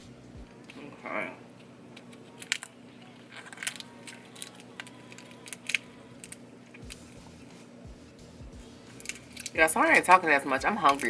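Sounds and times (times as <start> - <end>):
chewing and handling shellfish: 2.0 - 7.5, 8.8 - 9.6.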